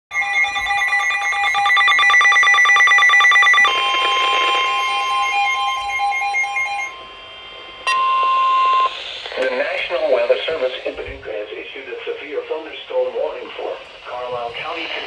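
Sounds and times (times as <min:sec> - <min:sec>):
pulsing electronic alarm tone: 0:00.1 - 0:09.2.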